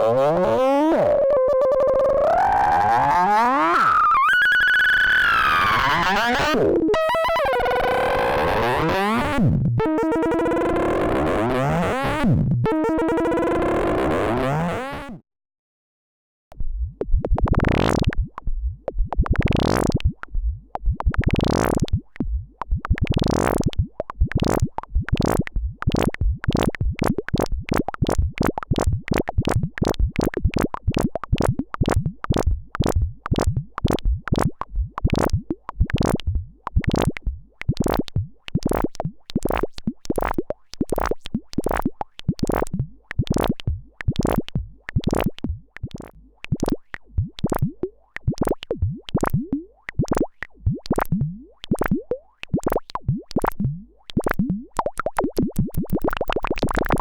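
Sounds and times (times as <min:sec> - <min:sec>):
synthesizer plucked notes: 0:05.5 - 0:15.2, 0:33.6 - 0:57.0.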